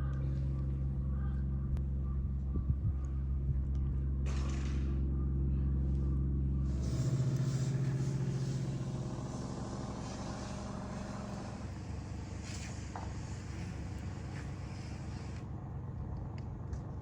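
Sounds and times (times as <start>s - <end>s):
large engine humming: 0.0s - 17.0s
rushing noise: 6.7s - 13.9s.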